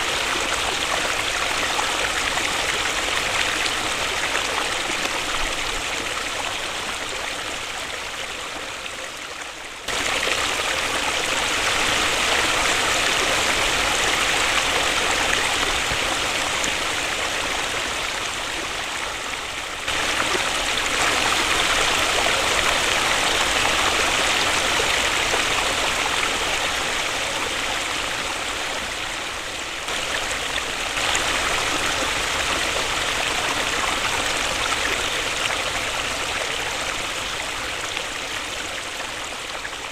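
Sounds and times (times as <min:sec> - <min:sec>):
waterfall rushing: 0:09.9 - 0:39.2.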